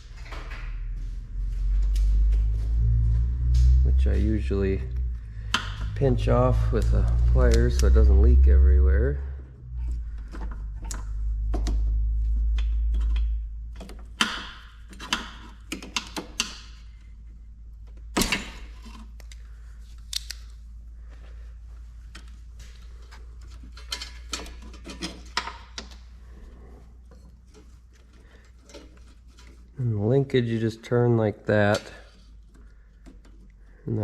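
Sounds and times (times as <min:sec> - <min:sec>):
low rumble: 0:00.0 - 0:13.8
metal parts clicking and knocking: 0:09.8 - 0:17.1, 0:22.1 - 0:26.2, 0:27.1 - 0:29.8.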